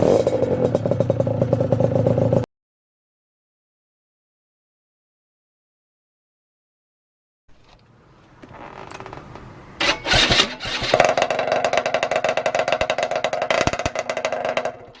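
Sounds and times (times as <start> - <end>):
two-stroke motorcycle engine running: 0.0 - 2.5, 9.8 - 15.0.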